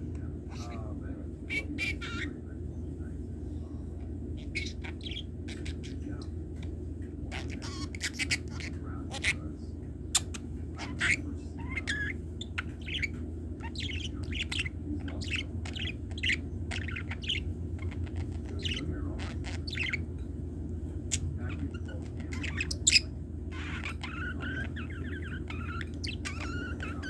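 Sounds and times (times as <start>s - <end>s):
steady low hum: 0.0s - 27.0s
budgerigar chirping and squeaking: 1.5s - 2.4s, 4.4s - 6.0s, 7.3s - 9.4s, 10.2s - 20.1s, 21.1s - 27.0s.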